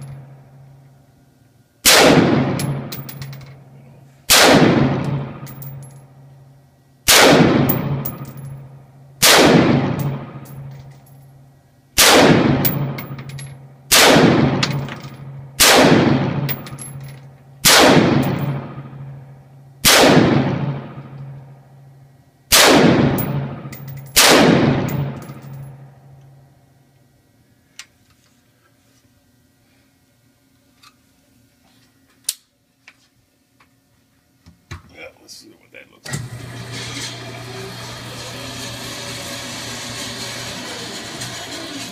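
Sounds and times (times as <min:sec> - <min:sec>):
steady low hum: 0:00.0 - 0:36.2
echoing gunshots: 0:01.8 - 0:03.1, 0:04.3 - 0:05.7, 0:07.1 - 0:08.4, 0:09.2 - 0:10.6, 0:12.0 - 0:13.2, 0:13.9 - 0:15.0, 0:15.6 - 0:17.0, 0:17.6 - 0:19.2, 0:19.8 - 0:21.2, 0:22.5 - 0:25.8.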